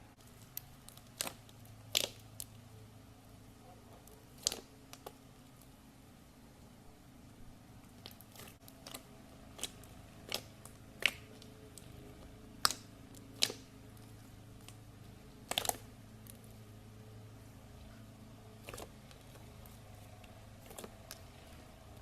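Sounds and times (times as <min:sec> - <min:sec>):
slime clicking and popping: 0:00.3 - 0:02.6, 0:04.0 - 0:05.2, 0:08.0 - 0:14.8, 0:15.4 - 0:16.4.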